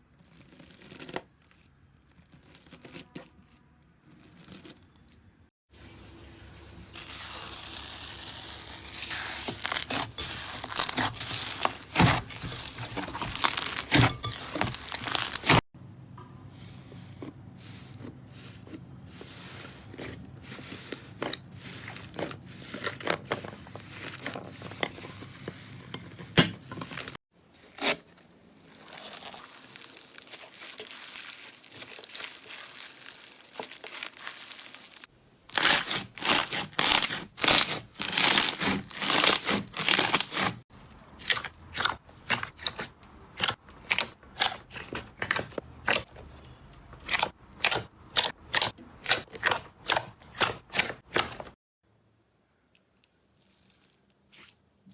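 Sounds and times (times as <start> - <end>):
slime crackling and popping: 7.0 - 15.6, 27.7 - 40.5.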